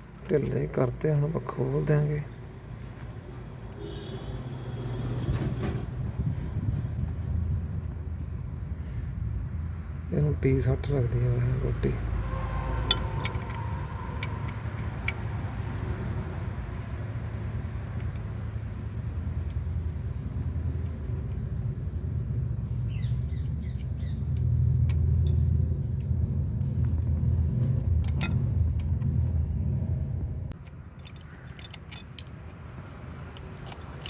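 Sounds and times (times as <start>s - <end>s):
low mechanical rumble: 0.0s - 34.0s
hand tools clicking: 30.5s - 34.0s.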